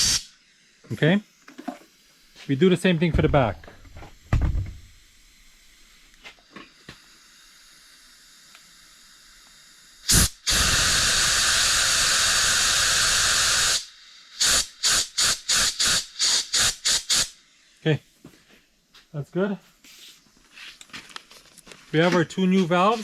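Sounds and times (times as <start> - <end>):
compressed air blow gun: 0.0 - 0.5, 3.2 - 17.4.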